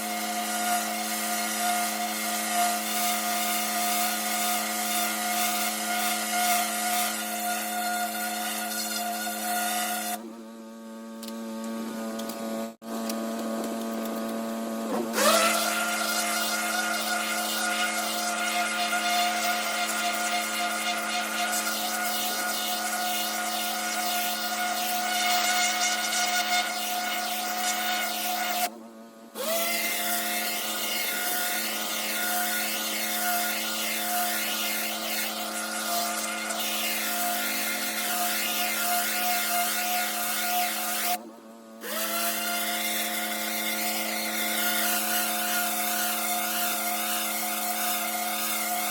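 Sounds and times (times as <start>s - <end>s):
pressure washer hum: 15.0s - 28.8s, 29.4s - 41.2s.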